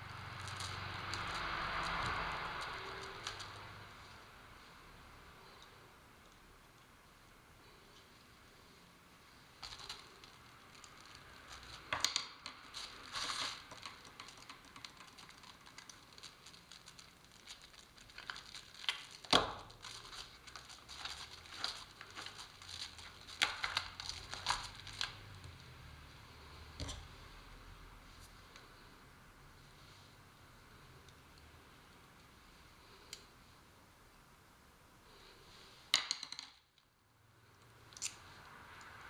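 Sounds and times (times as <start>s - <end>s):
plastic sheeting crinkling: 0.0s - 4.3s, 12.6s - 25.8s.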